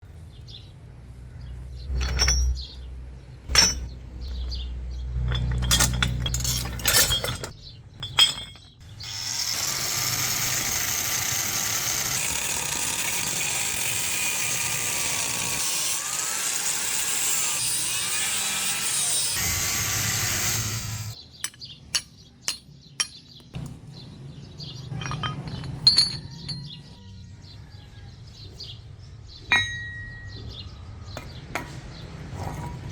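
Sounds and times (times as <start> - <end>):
metal clinks and knocks: 1.9 - 8.9, 21.4 - 23.8, 24.8 - 27.1, 29.5 - 30.6.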